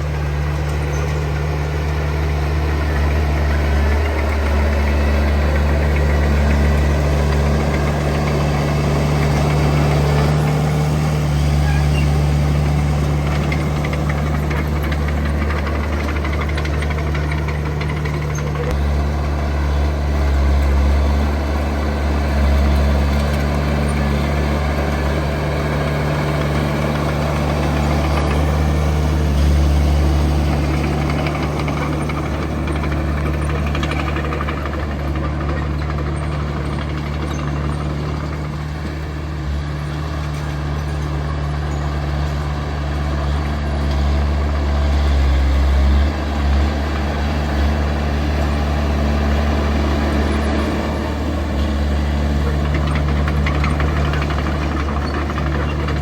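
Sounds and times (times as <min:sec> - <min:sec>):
diesel earthmoving machinery running: 0:00.0 - 0:56.0.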